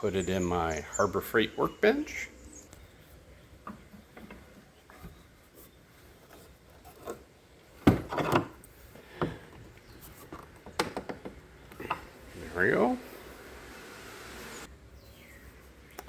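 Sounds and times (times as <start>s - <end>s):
knocks and clunks on workbench: 7.8s - 9.7s, 10.3s - 12.1s.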